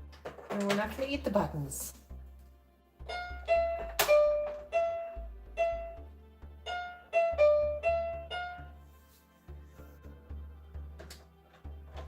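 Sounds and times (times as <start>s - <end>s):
electronic keyboard single notes: 3.0s - 8.8s.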